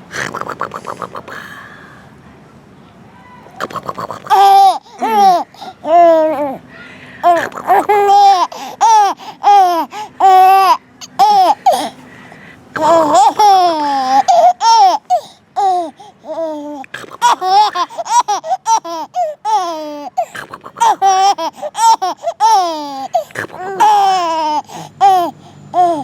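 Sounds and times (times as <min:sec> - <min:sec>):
baby laughing: 0:03.6 - 0:12.0, 0:12.8 - 0:26.0.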